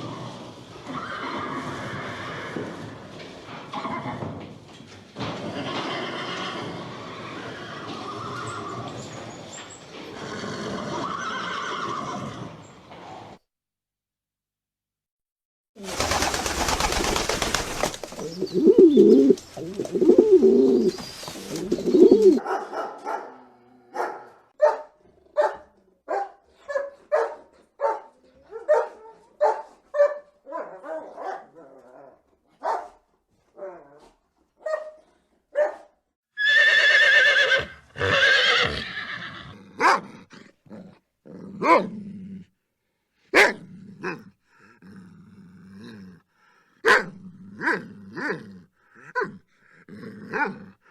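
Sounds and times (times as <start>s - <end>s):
dog barking: 22.4s - 31.9s, 32.6s - 33.0s, 34.6s - 36.0s, 39.8s - 40.1s, 41.6s - 41.9s, 43.3s - 44.2s, 46.8s - 48.4s, 49.1s - 49.4s.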